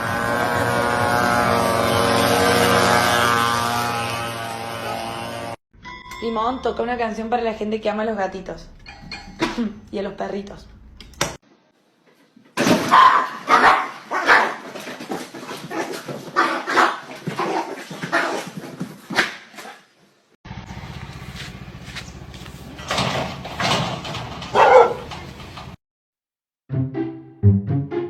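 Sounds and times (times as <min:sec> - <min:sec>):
dog barking: 0:12.8 - 0:14.6, 0:16.4 - 0:18.4, 0:24.5 - 0:25.1.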